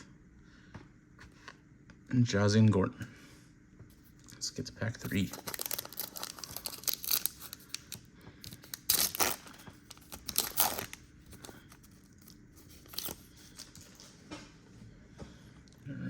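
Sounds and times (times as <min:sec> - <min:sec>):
plastic wrapper tearing and crinkling: 0:05.0 - 0:14.0.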